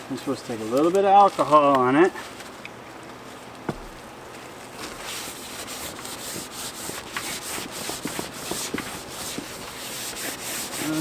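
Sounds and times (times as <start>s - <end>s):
cloth rubbing a door flap: 4.8s - 11.0s.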